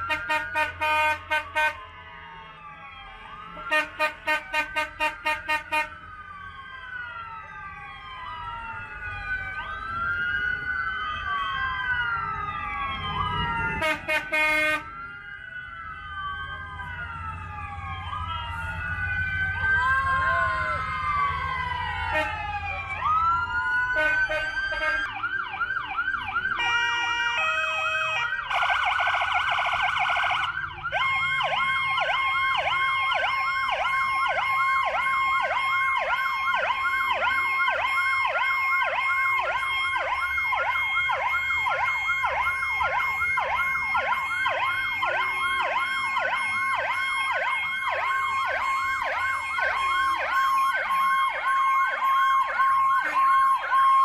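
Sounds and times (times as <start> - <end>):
electronic sirens wailing: 0.0 - 54.0
buzzing horn blast: 0.1 - 1.8, 3.6 - 5.9, 13.8 - 14.9, 24.0 - 25.1.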